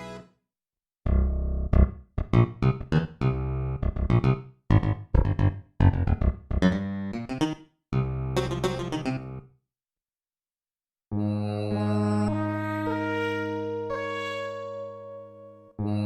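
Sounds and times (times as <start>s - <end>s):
synthesizer short notes: 8.3s - 9.4s.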